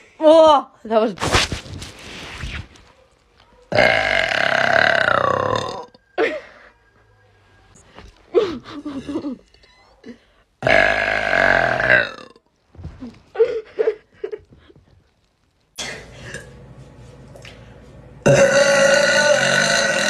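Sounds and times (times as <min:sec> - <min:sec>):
woman burping: 0:03.7 - 0:06.5, 0:10.6 - 0:12.4, 0:18.2 - 0:20.0.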